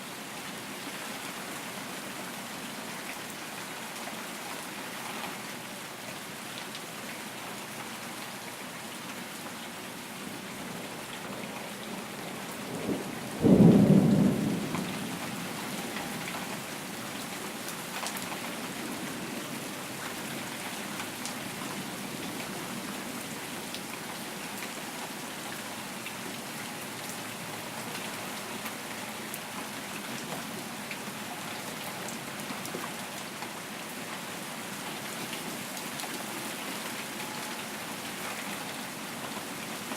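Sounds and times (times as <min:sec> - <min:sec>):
steady rain falling: 0:00.0 - 0:39.9
thunderclap rumbling: 0:12.8 - 0:15.2.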